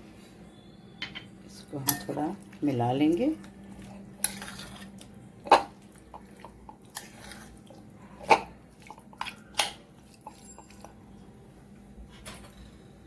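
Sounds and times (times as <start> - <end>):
chicken stirred in marinade: 1.5 - 11.2
utensil clinking against bowl: 9.2 - 11.0.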